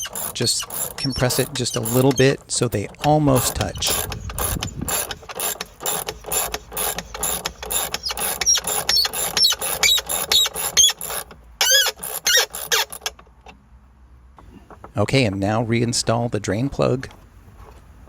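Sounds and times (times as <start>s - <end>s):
bolt tightening clicking squeaks: 0.0s - 13.2s.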